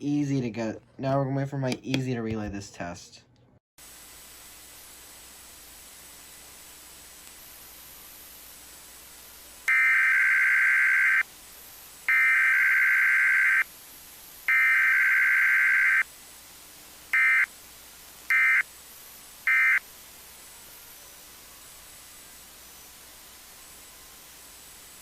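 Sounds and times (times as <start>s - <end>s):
radio hiss: 3.8s - 25.0s
buzzy warbling data tone bursts: 12.1s - 13.7s, 14.5s - 16.0s, 18.3s - 18.7s, 19.4s - 19.8s.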